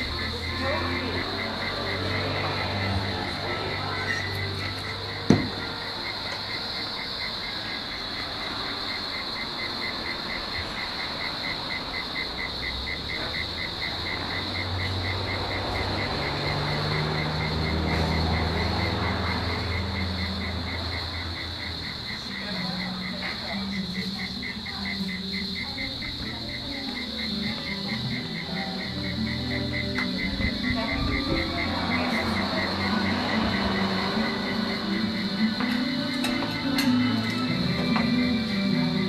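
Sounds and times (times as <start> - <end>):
cicadas droning: 0.0 - 39.0
sharp knock: 5.3 - 5.6.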